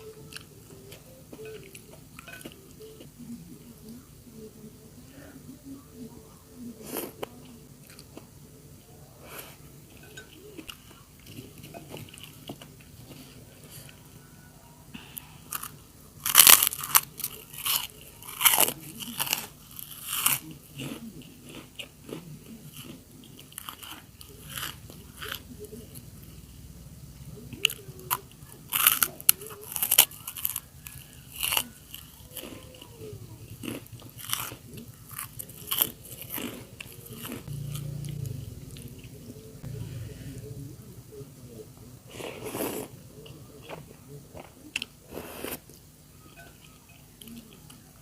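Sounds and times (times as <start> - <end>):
soft chewing: 0.0 - 4.5, 5.2 - 48.0
loud crunching of crackers: 15.5 - 26.1, 27.6 - 37.5.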